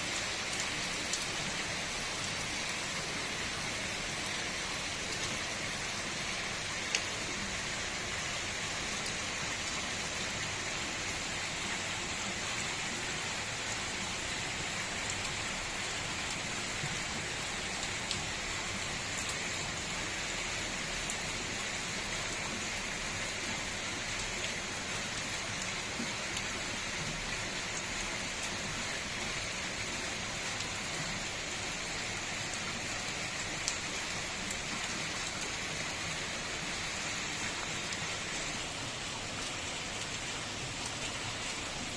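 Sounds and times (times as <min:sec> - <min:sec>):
steady rain falling: 0:00.0 - 0:41.9
sharp raindrop ticks: 0:06.8 - 0:07.1, 0:17.4 - 0:18.3, 0:33.4 - 0:33.8.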